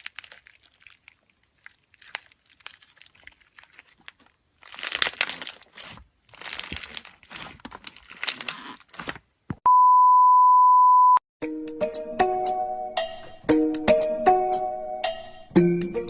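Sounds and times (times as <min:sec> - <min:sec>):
slime crackling when squeezed: 0:00.0 - 0:09.1
loud steady beep: 0:09.7 - 0:11.2.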